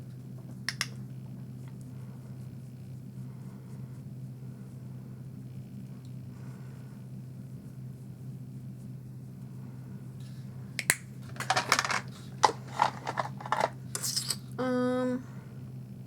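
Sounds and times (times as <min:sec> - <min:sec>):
brush scratching and tapping: 0:11.3 - 0:14.4.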